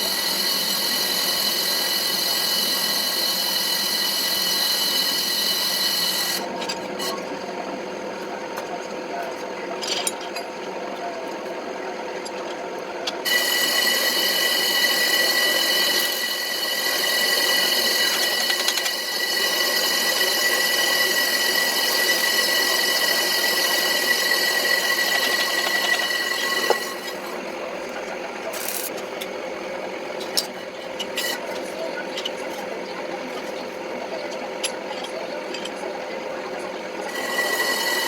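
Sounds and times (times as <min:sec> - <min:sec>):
power tool whining on steel: 0:00.0 - 0:07.2, 0:13.2 - 0:27.5, 0:37.0 - 0:38.0.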